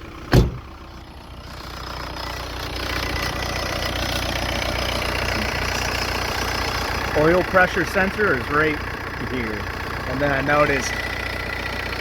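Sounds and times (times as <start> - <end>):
diesel engine idling: 0.0 - 12.0
loud thump: 0.3 - 0.7.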